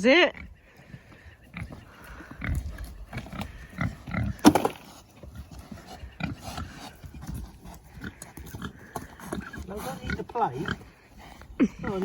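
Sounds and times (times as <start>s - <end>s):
pigs grunting: 0.2s - 12.0s.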